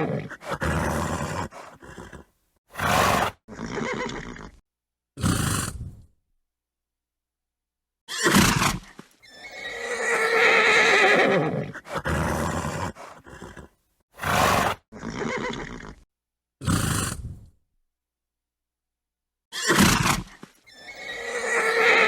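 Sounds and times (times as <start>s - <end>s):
horse neighing: 0.0s - 4.6s, 8.1s - 16.0s, 19.5s - 22.0s
horse snorting: 0.0s - 4.6s, 5.2s - 6.0s, 11.1s - 16.0s, 16.6s - 17.5s.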